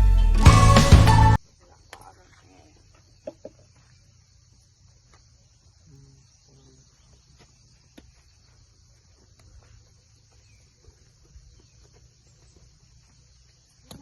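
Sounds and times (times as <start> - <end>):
high-pitched insect chorus: 1.4 - 14.0.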